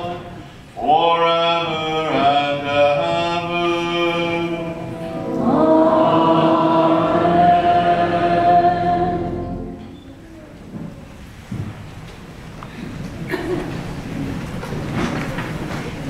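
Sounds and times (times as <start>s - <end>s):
choir and congregation singing: 0.0s - 10.0s.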